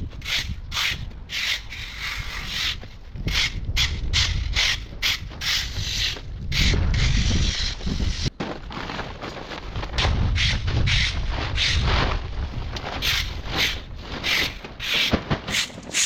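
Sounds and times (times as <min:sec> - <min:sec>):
hand saw cutting branch: 0:13.0 - 0:16.0.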